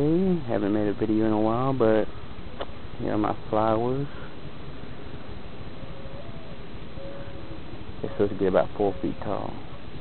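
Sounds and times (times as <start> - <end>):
steady background hiss: 0.0 - 10.0.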